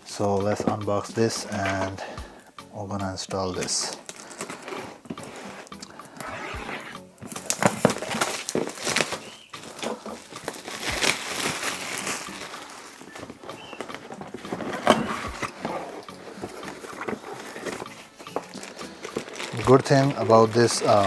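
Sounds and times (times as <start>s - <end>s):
packaging rustling: 0.0s - 21.0s.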